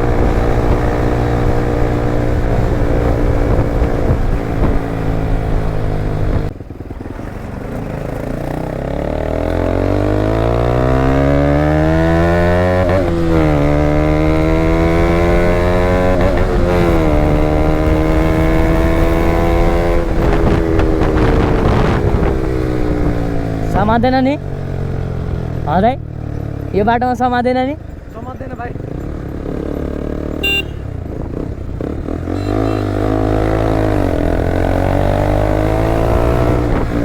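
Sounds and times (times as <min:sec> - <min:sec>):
motorcycle engine accelerating: 0:00.0 - 0:37.0.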